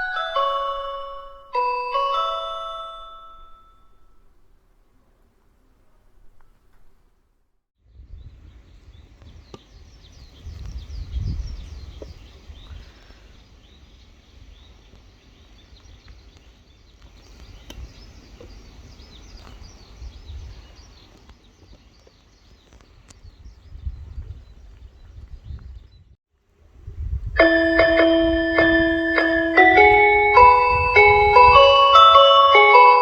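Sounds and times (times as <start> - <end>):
small birds twittering: 7.9 - 26.1
low gusting rumble: 26.8 - 33.0.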